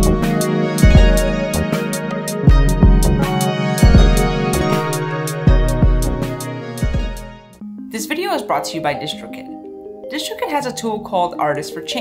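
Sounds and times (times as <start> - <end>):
synthesizer held chords: 0.0 - 12.0
kick drum thumps: 0.8 - 1.5, 2.5 - 3.2, 3.8 - 4.4, 6.8 - 7.3.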